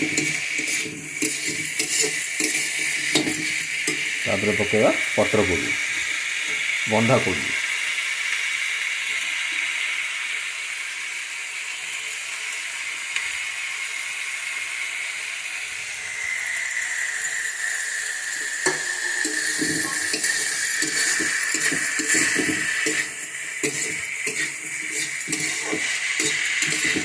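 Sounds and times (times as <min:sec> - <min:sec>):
spatula scraping and clinking pan: 0:00.0 - 0:04.2, 0:16.9 - 0:27.0
vegetables sizzling in oil: 0:00.0 - 0:27.0.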